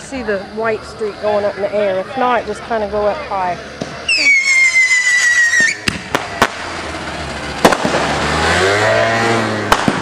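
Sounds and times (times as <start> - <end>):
hissing crackling fireworks: 3.6 - 10.0
firework bangs: 3.8 - 10.0
whistling firework: 4.0 - 6.8, 7.4 - 10.0.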